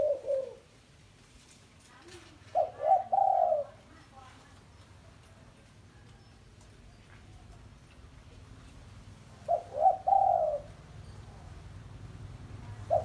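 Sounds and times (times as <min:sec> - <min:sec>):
dove cooing: 0:00.0 - 0:00.7, 0:02.4 - 0:03.9, 0:09.2 - 0:11.2, 0:12.4 - 0:13.0.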